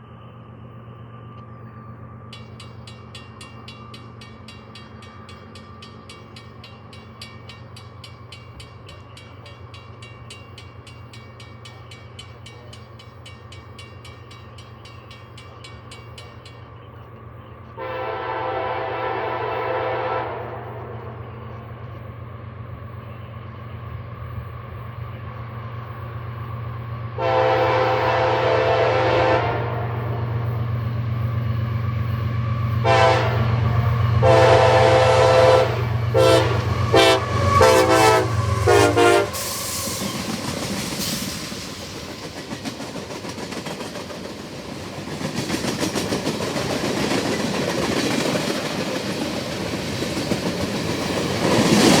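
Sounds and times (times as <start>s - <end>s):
train wheels clattering on rails: 1.3s - 18.0s, 20.7s - 52.0s
locomotive horn: 17.8s - 21.2s, 27.2s - 30.5s, 32.8s - 39.8s.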